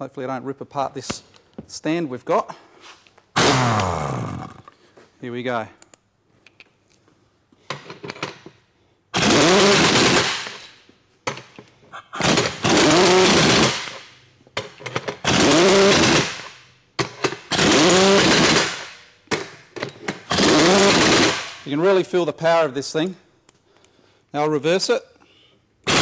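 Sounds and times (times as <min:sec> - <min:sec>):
pneumatic impact wrench hammering: 0:03.4 - 0:04.4, 0:09.2 - 0:10.7, 0:12.2 - 0:21.6.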